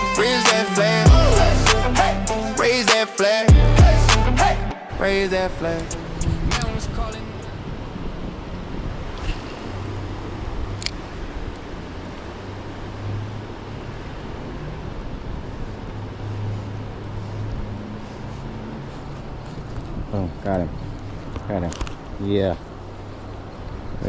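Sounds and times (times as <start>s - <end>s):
river water flowing: 0.0s - 24.0s
low rumble: 3.5s - 7.4s.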